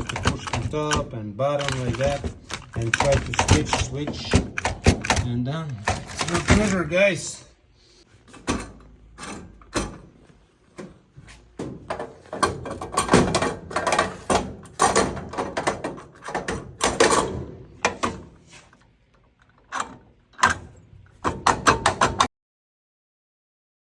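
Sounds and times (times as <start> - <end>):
metal knocks and rattles of lock: 0.0 - 6.9, 8.4 - 10.2, 11.6 - 18.3, 19.5 - 22.3.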